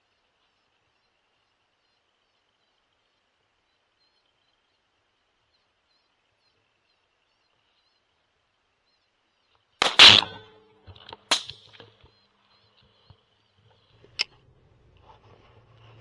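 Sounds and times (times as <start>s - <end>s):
rifle shots: 9.8s - 10.6s, 11.3s - 11.8s.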